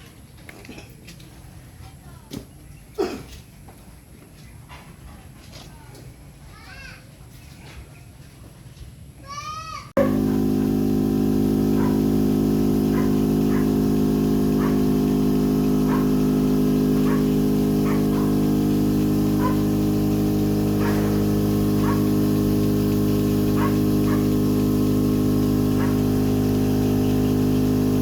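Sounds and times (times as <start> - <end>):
steady machine hum: 10.0 - 28.0.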